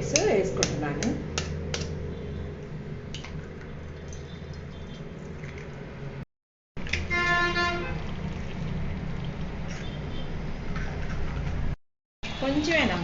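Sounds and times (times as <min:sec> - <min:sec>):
horn-like tone: 0:07.0 - 0:08.1
eggs frying in hot oil: 0:07.9 - 0:10.3.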